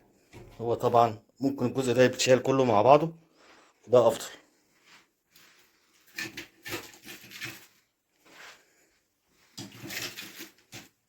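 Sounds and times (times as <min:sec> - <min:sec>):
scraping and knocking of machine parts: 0:09.5 - 0:11.0.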